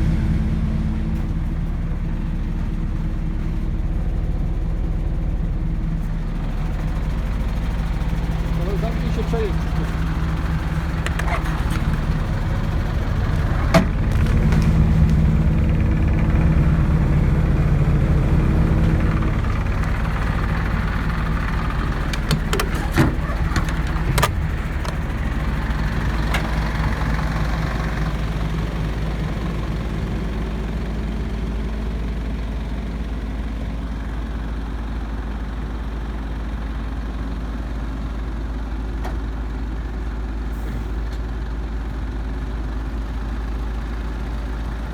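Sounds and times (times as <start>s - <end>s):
truck diesel engine idling: 0.0s - 44.9s
clicks and knocks: 10.0s - 12.1s, 19.6s - 25.4s.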